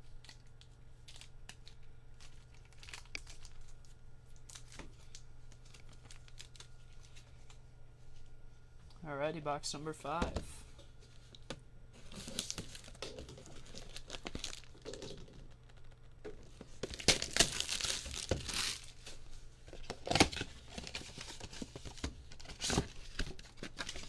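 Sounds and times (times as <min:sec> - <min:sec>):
card packaging being torn open: 0:00.2 - 0:07.2, 0:12.0 - 0:24.0.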